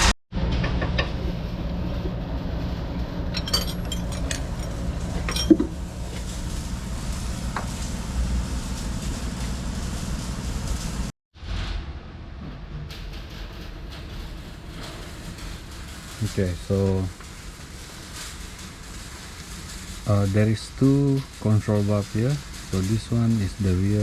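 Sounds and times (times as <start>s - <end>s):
light metallic clinks: 3.4s - 5.7s.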